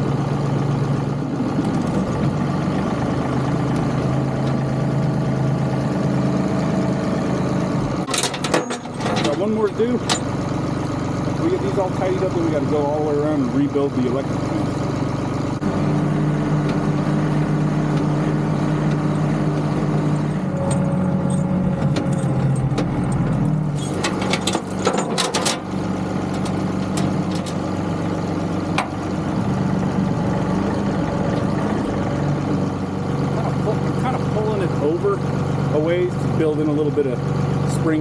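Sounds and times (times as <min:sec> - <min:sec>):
tractor diesel engine running: 0:00.0 - 0:38.0
jangling clinking rattle: 0:08.1 - 0:09.4, 0:10.0 - 0:10.4, 0:20.6 - 0:25.7.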